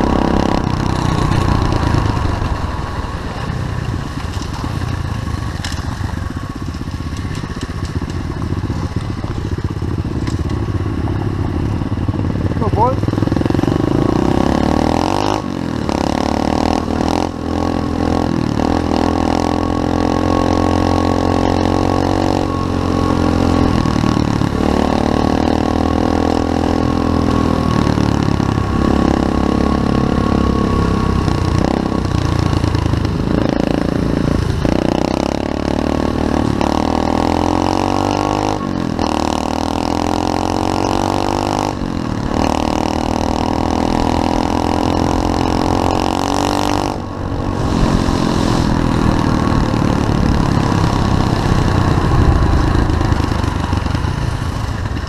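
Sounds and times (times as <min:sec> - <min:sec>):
motorbike engine revving: 0:00.0 - 0:55.0.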